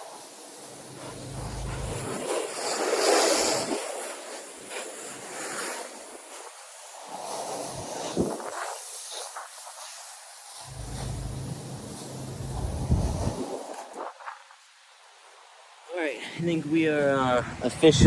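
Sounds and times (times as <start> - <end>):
pressure washer spraying wall: 10.7 - 13.3.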